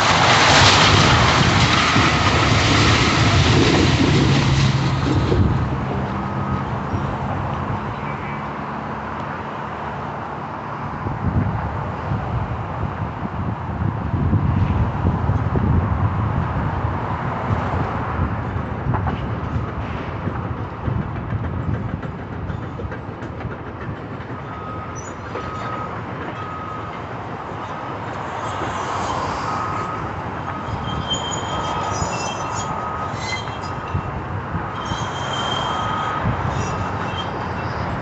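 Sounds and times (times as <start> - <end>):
demolition machinery rumbling: 0.0 - 9.1, 11.1 - 38.0
reverse alarm beeping: 24.5 - 27.0, 29.5 - 33.9
high metal squeals: 27.7 - 38.0.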